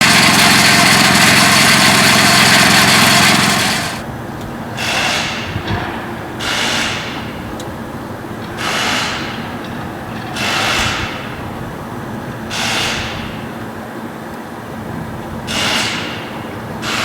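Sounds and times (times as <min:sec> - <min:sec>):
brush cutter running: 0:00.0 - 0:04.1.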